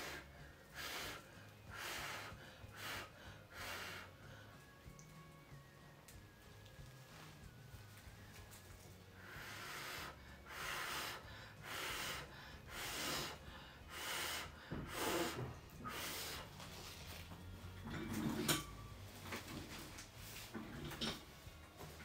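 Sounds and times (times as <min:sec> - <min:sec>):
short puffs of blown air: 0:09.2 - 0:16.6.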